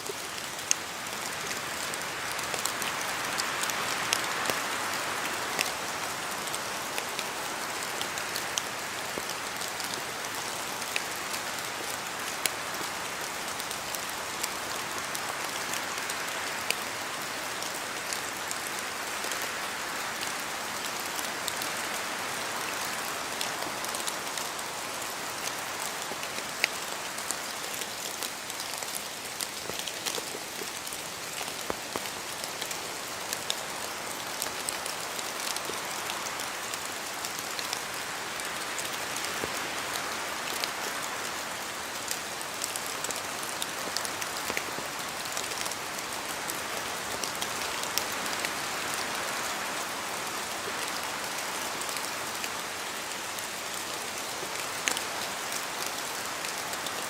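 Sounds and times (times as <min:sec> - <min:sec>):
rain falling in forest: 0:00.0 - 0:57.0
wind gusts through trees: 0:00.0 - 0:57.0
drops dripping from trees: 0:22.9 - 0:39.9.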